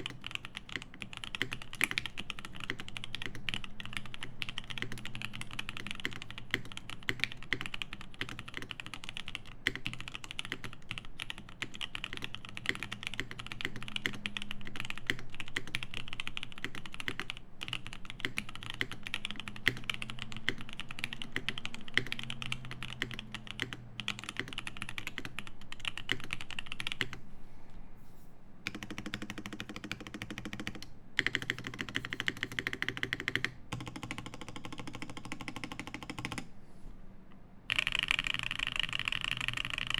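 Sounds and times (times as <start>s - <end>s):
mechanical keyboard typing: 0.0s - 27.2s, 28.6s - 36.5s, 37.7s - 39.9s.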